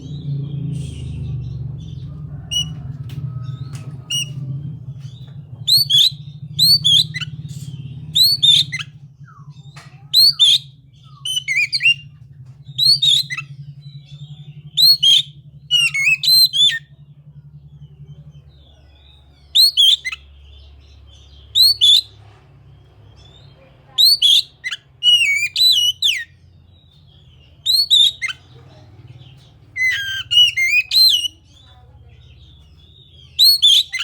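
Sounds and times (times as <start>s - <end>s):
steady low hum: 0.0s - 34.0s
bird singing whistled notes: 5.6s - 12.1s, 12.7s - 16.9s, 19.0s - 22.2s, 23.9s - 26.9s, 27.6s - 28.4s, 29.8s - 31.7s, 32.4s - 34.0s.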